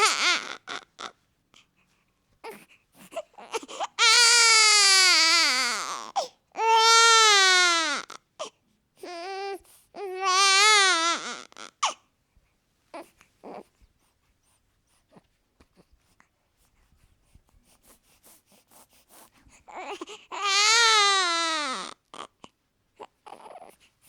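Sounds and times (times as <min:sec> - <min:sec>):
newborn baby crying: 0:00.0 - 0:01.2, 0:02.4 - 0:12.0, 0:19.7 - 0:23.8.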